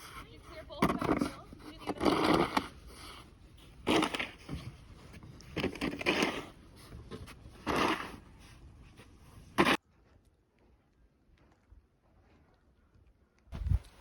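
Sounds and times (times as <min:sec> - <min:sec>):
snow crunching and scraping: 0:00.0 - 0:09.8.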